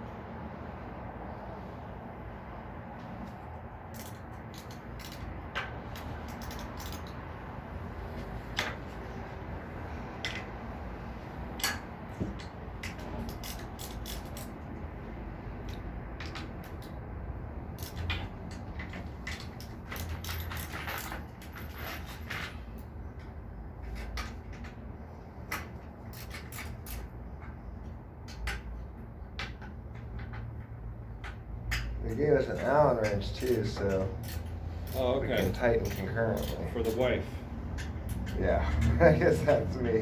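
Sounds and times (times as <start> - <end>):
ratchet wrench clicking: 3.9 - 7.3, 12.4 - 14.7, 17.7 - 22.4, 25.5 - 27.1, 29.4 - 39.0.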